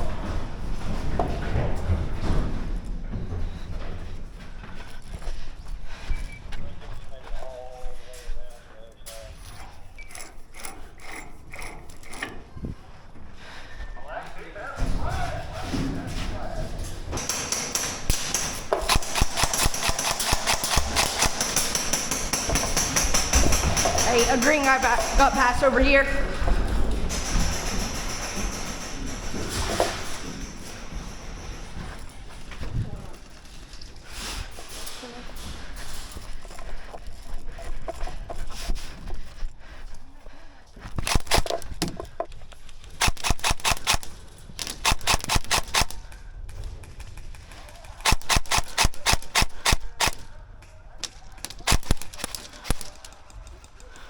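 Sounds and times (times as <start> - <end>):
airsoft gun shots: 48.0 - 50.2.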